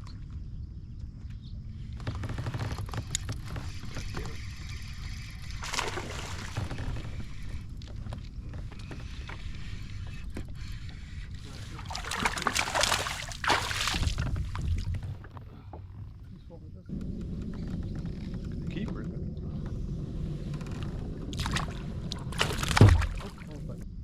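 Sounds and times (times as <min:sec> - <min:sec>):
steady low water rumble: 0:00.0 - 0:24.0
water splashing: 0:05.6 - 0:06.9, 0:11.5 - 0:15.0, 0:21.3 - 0:23.8
small knocks on kayak: 0:22.3 - 0:23.3.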